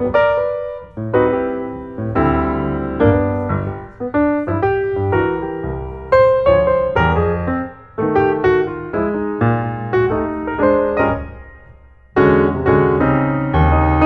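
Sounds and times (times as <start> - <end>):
slow piano chords: 0.0 - 14.0.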